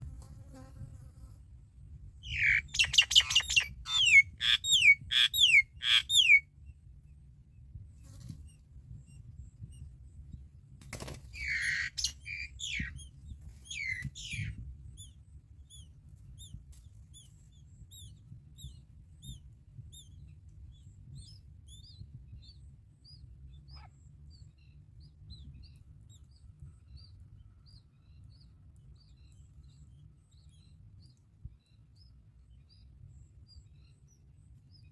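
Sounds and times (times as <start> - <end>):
bird harsh begging calls: 2.3 - 6.4, 11.4 - 12.9, 13.7 - 14.5
faint high chirps: 2.3 - 6.4, 11.4 - 14.6.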